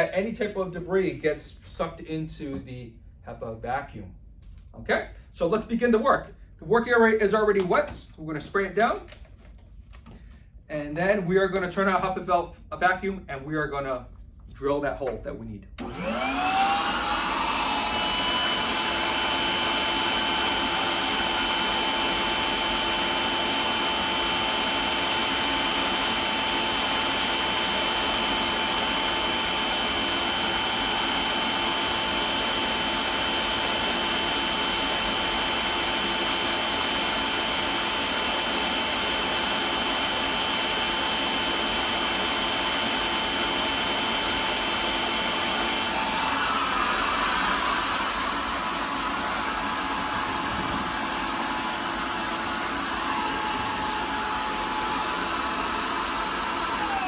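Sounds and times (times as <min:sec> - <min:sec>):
vacuum whine: 0:15.8 - 0:57.0.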